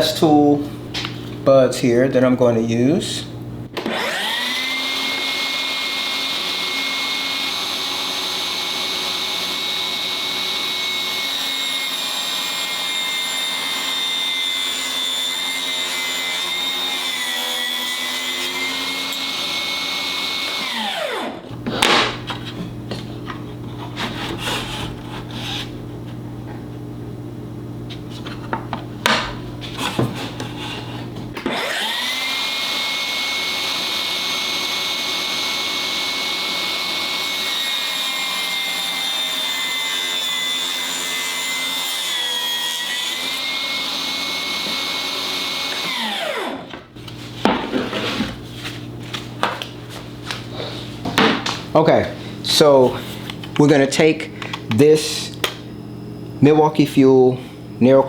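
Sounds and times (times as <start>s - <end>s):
table saw whining: 3.7s - 26.2s, 28.0s - 58.0s
saw blade cutting plywood: 3.8s - 22.5s, 23.7s - 25.8s, 29.1s - 48.5s.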